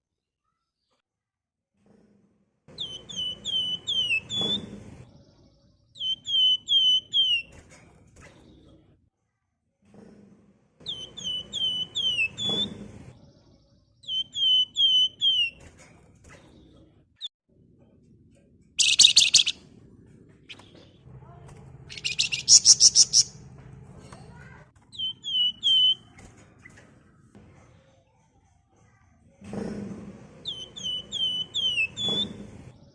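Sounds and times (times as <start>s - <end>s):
birds buzzy chatter: 2.7s - 9.0s, 10.8s - 17.1s, 18.8s - 28.2s, 29.1s - 32.9s
birds whistling falling notes: 2.8s - 4.6s, 6.0s - 7.6s, 10.9s - 12.8s, 18.8s - 19.6s, 21.9s - 23.4s, 24.9s - 26.8s, 30.4s - 32.4s.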